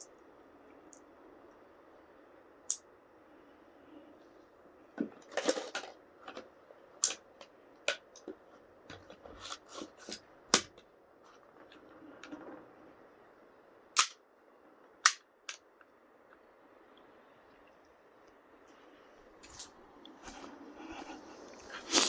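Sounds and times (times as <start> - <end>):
metallic clicks of toy pistol: 14.0 - 14.2.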